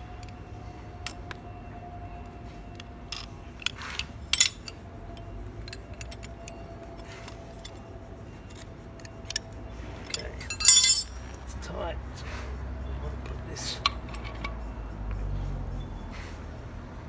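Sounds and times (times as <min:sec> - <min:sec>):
metal clinks and clicks: 0:03.1 - 0:07.8, 0:08.5 - 0:11.4.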